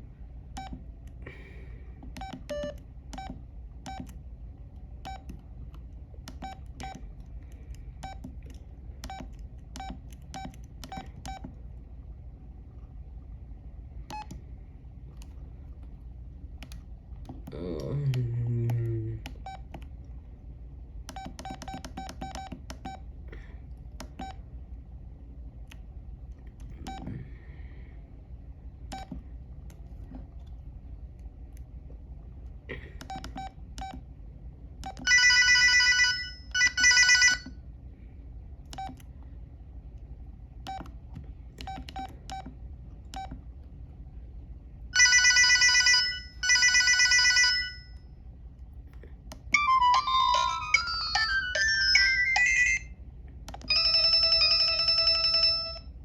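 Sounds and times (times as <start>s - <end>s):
electronic phone ringtone: 35.1s - 37.5s, 45.0s - 48.0s, 49.6s - 52.9s, 53.7s - 55.9s.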